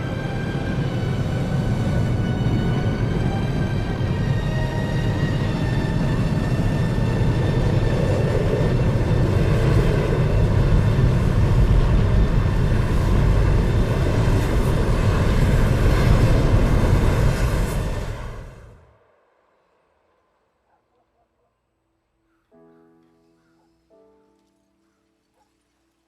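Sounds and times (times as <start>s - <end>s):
tornado wind rumbling: 0.0s - 19.1s.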